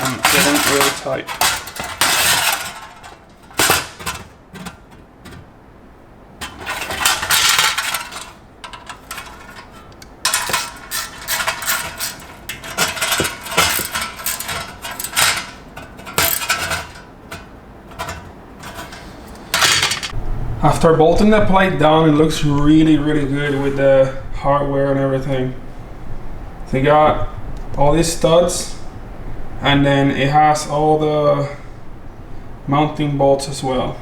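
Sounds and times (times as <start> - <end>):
hand tools clinking on metal bolts: 0.0 - 5.5, 6.4 - 20.2.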